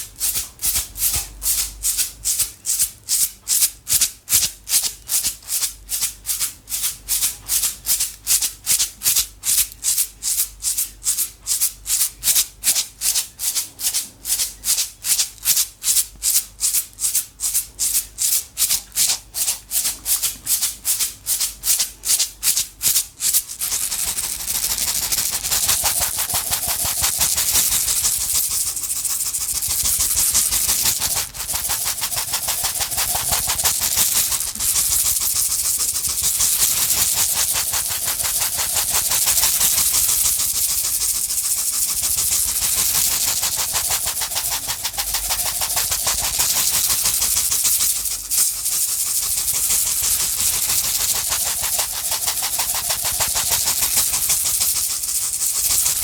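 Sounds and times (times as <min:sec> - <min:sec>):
container of small objects rattling: 0:23.2 - 0:56.0.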